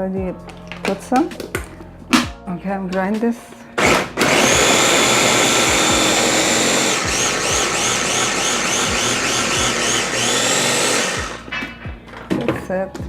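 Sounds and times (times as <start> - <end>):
food processor motor whining: 3.8 - 11.4.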